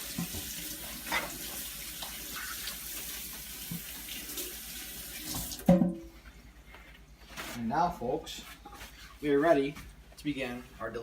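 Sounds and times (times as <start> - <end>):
kitchen tap running water: 0.0 - 5.8.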